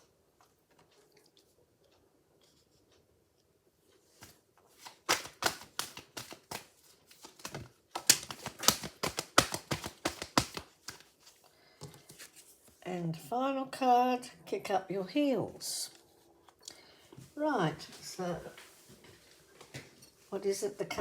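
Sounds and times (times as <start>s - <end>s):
cards being shuffled: 4.2s - 11.4s.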